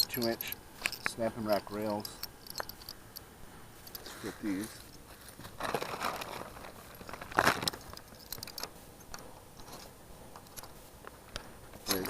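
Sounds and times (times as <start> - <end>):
metal clamps clinking and rattling: 0.0 - 3.0, 6.0 - 10.7.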